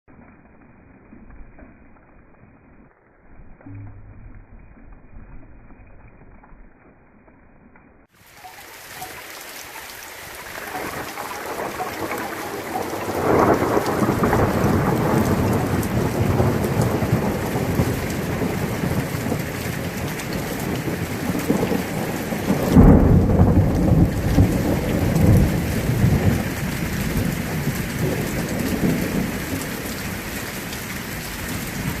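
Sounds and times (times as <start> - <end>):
thunder rumbling: 0.2 - 32.0
heavy rain pouring: 8.0 - 32.0.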